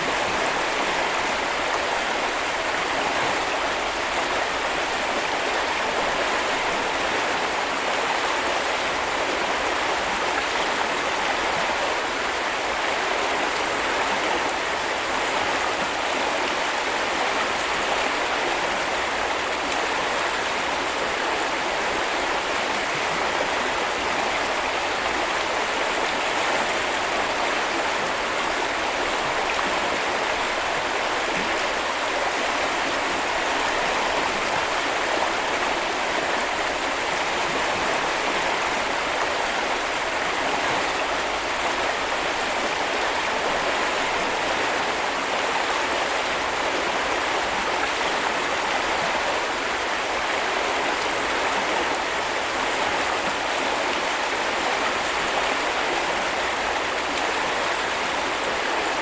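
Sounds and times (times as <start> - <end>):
river flowing over stones: 0.0 - 59.0.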